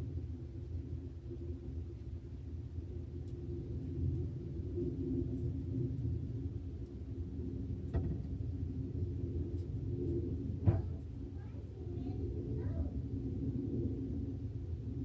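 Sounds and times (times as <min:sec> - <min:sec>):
low rumble with faint hum: 0:00.0 - 0:15.0.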